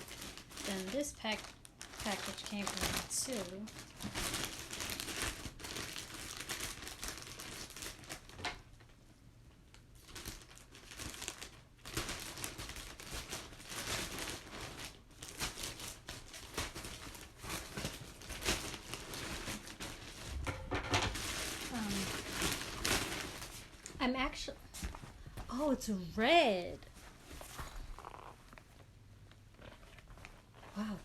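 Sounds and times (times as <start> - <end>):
packaging crinkling: 0.0 - 8.4, 9.7 - 20.4, 21.1 - 24.0.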